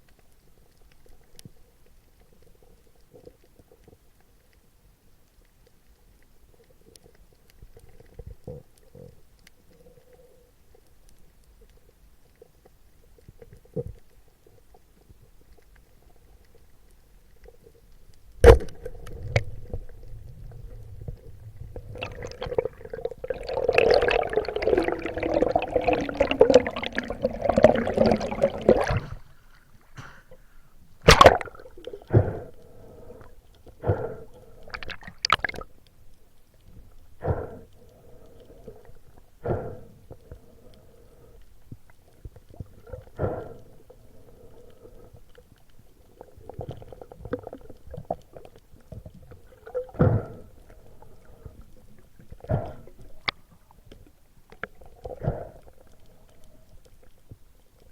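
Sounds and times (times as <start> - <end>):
muffled underwater water sound: 0.0 - 57.9
bubbling gurgling water: 18.4 - 29.4, 31.1 - 33.3, 34.0 - 35.8, 45.9 - 53.9.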